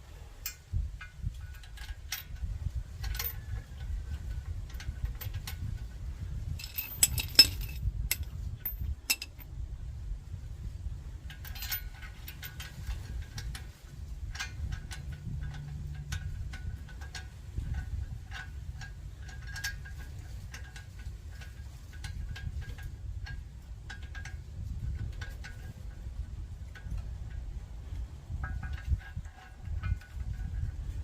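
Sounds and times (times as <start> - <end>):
low steady rumble: 0.0 - 31.0
metal hardware clinking: 3.0 - 5.7, 6.5 - 9.5, 11.3 - 13.7.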